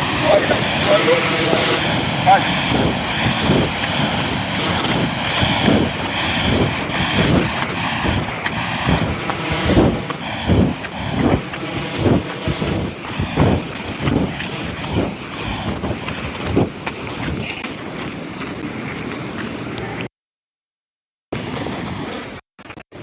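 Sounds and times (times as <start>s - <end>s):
waterfall pouring: 0.0s - 15.7s
wind buffeting microphone: 0.0s - 20.0s.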